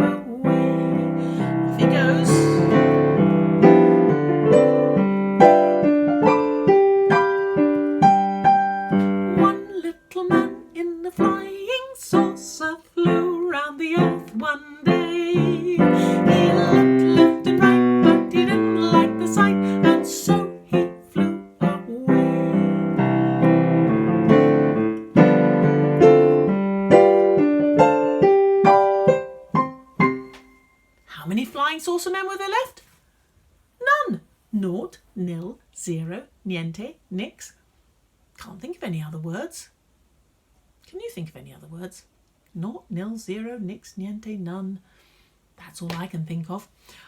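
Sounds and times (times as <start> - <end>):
piano playing simple melody: 0.0 - 31.0.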